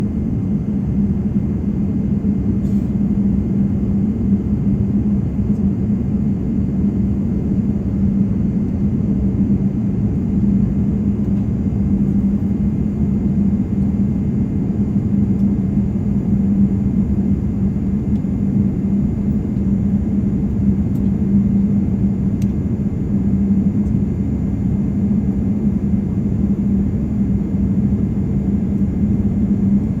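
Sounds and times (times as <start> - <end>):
airliner cabin engine rumble: 0.0 - 30.0
constant low hum: 0.0 - 30.0.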